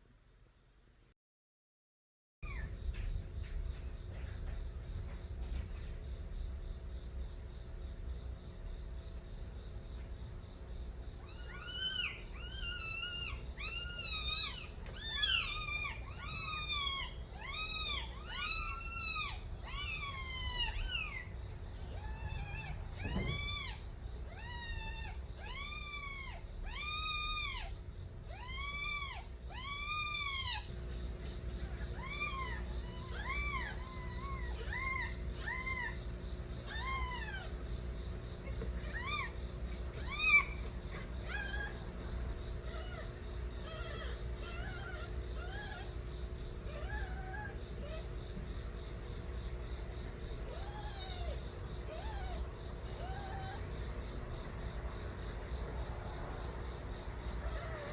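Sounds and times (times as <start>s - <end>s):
kittens meowing loudly: 11.2s - 30.7s, 31.6s - 36.0s, 36.6s - 37.6s, 38.4s - 41.8s, 42.6s - 45.9s, 46.7s - 48.1s, 50.4s - 53.7s.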